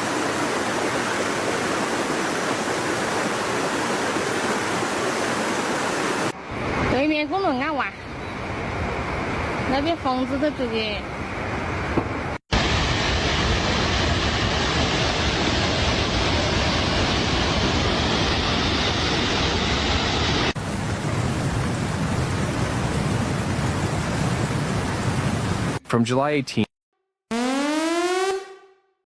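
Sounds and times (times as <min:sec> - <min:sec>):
heavy rain: 0:00.0 - 0:06.4, 0:20.4 - 0:25.8.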